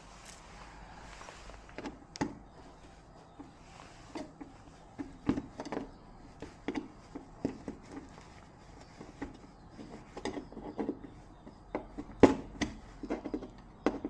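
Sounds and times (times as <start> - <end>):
tools and parts clicking: 0.2 - 0.6.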